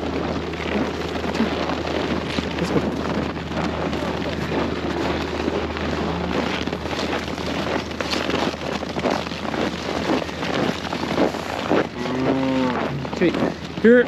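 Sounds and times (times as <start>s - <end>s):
steady low hum: 0.0s - 14.0s
wind buffeting microphone: 0.0s - 14.0s.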